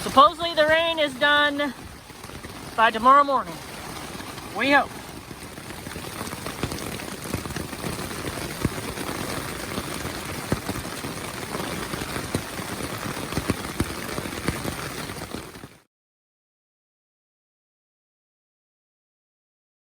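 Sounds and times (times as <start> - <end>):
rain on a tent: 0.0 - 15.9.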